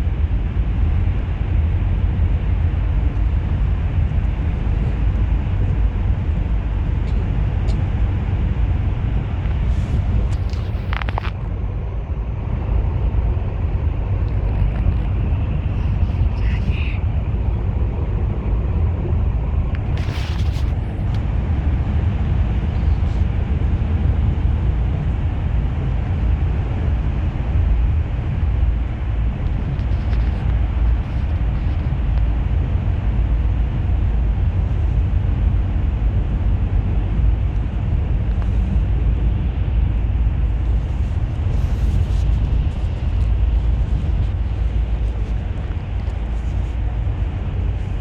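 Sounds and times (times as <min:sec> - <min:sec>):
bus engine and road rumble: 0:00.0 - 0:48.0.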